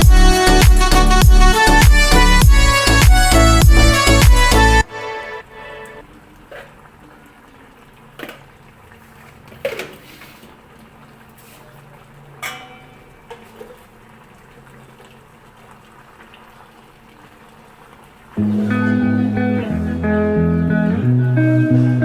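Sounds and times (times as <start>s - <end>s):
fish sizzling in oil: 5.7s - 18.5s.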